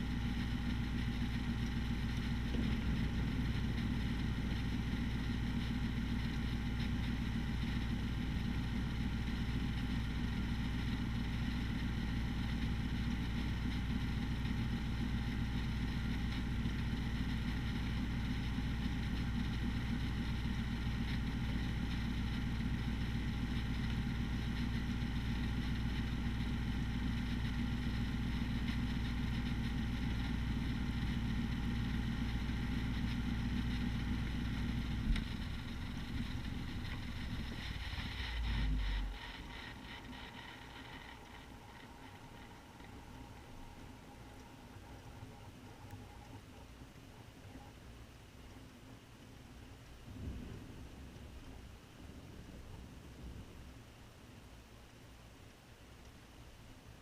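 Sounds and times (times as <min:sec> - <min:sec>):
heavy rain: 0:49.9 - 0:54.5
wind rumble on microphone: 0:50.0 - 0:54.2.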